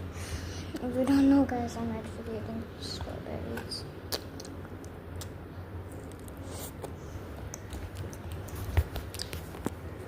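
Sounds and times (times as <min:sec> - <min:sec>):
low steady hum: 0:00.0 - 0:10.0
person chewing strawberries: 0:04.1 - 0:09.8.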